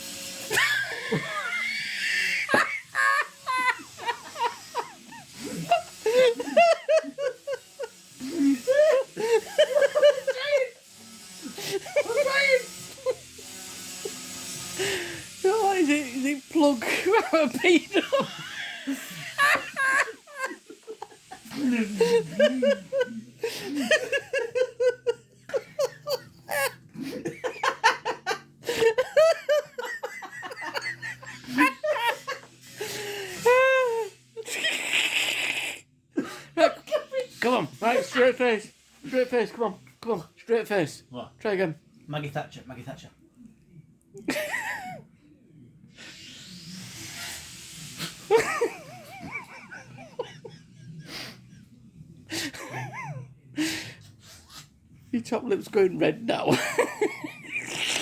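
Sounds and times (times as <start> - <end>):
men laughing: 0.5 - 10.8, 11.4 - 13.4, 16.7 - 34.5, 48.3 - 53.8, 56.3 - 58.0
breathy wheezes: 14.6 - 15.4, 32.6 - 36.5.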